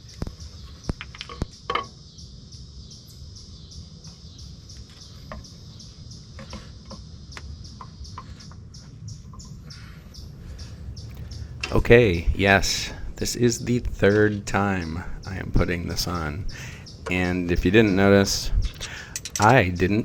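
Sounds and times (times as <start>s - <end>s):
bird chirping: 0.0s - 20.0s
low background rumble: 5.4s - 20.0s.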